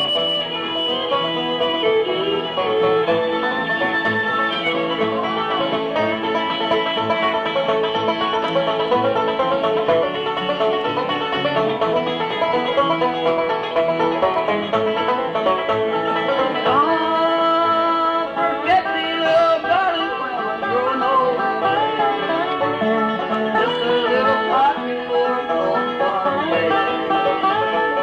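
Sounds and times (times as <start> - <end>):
acoustic guitar: 0.0 - 28.0
banjo picking: 0.0 - 28.0.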